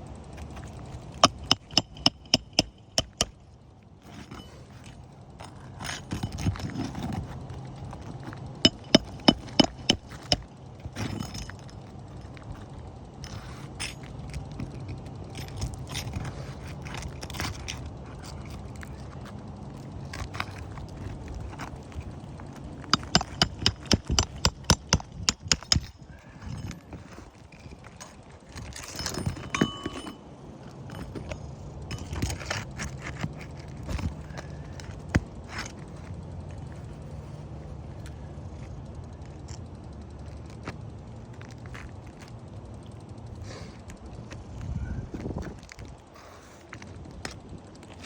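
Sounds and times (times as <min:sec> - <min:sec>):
scraping: 0:00.3 - 0:03.4, 0:04.0 - 0:37.4.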